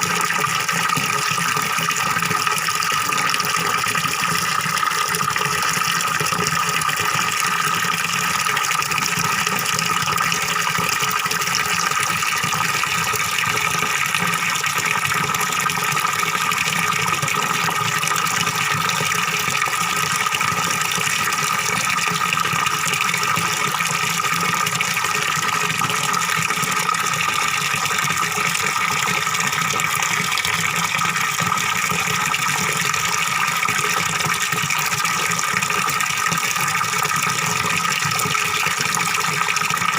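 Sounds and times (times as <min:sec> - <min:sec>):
waterfall pouring into pond: 0:00.0 - 0:39.9.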